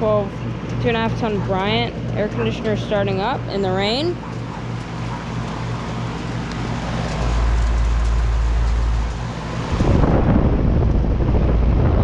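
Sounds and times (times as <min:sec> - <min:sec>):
compressor hum: 0:00.0 - 0:12.0
fan whoosh: 0:04.7 - 0:12.0
wind on microphone: 0:07.2 - 0:12.0.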